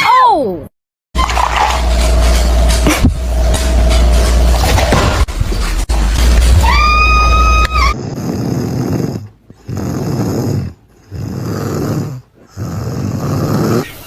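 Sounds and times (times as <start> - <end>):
animal snoring loudly: 7.9 - 14.0.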